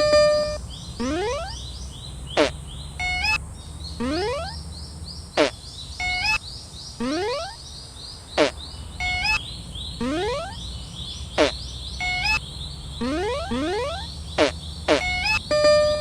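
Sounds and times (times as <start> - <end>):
electronic alarm swoops and beeps: 0.0 - 1.6, 2.4 - 3.4, 4.0 - 4.6, 5.4 - 6.4, 7.0 - 7.6, 8.4 - 9.4, 10.0 - 10.6, 11.4 - 12.4, 13.0 - 16.0.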